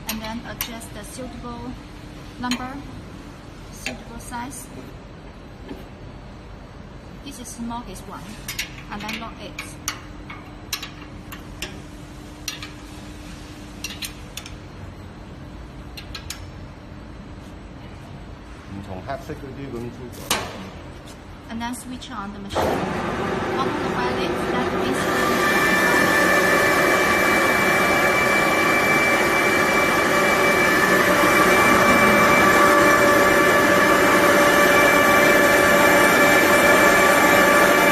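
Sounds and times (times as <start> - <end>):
industrial grinder whining: 22.6 - 37.9.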